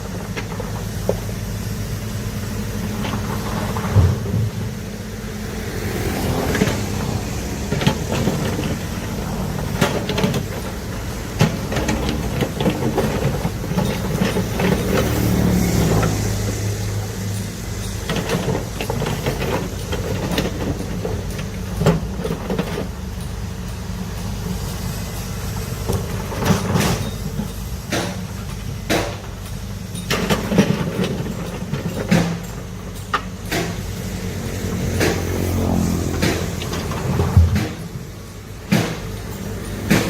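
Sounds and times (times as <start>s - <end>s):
diesel engine under load: 0.0s - 40.0s
sharp metal knocks and clanks: 17.2s - 40.0s.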